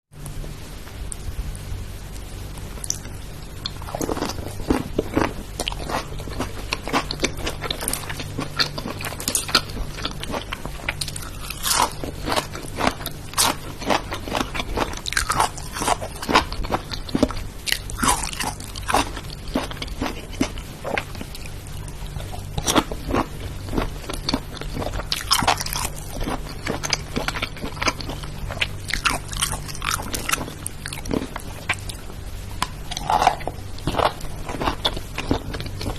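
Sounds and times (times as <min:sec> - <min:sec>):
low steady hum: 0:00.1 - 0:35.9
crunchy food being chewed: 0:02.7 - 0:35.9.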